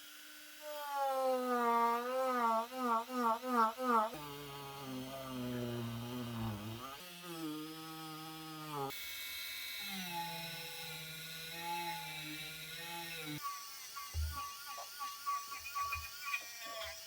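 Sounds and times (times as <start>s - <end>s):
rotary tool whining: 0.6s - 9.0s.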